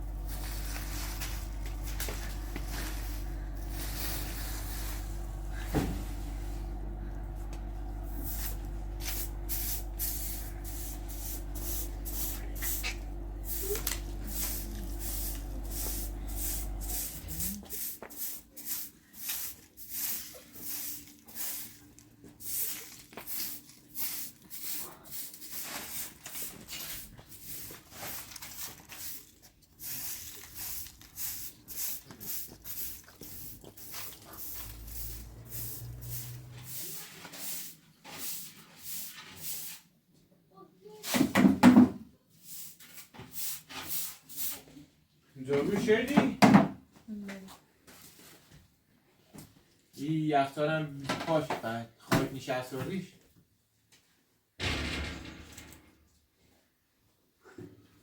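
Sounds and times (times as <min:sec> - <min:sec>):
low motor hum: 0:00.0 - 0:18.0, 0:32.5 - 0:36.7.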